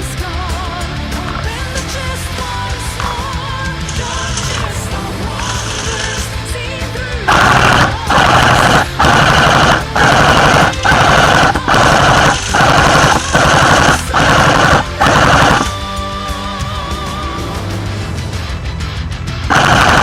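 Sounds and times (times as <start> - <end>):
automatic gunfire bursts: 3.8 - 6.4, 7.3 - 15.8, 19.5 - 20.0.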